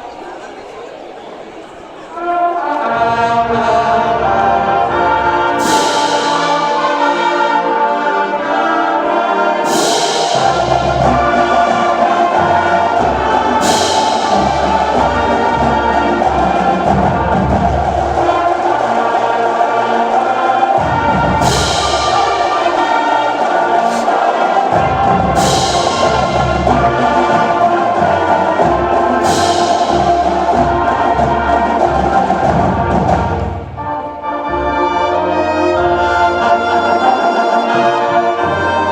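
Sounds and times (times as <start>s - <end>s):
orchestral music with choir: 2.0s - 38.9s
cymbal crash: 5.6s - 7.2s, 9.6s - 16.4s, 20.8s - 28.0s.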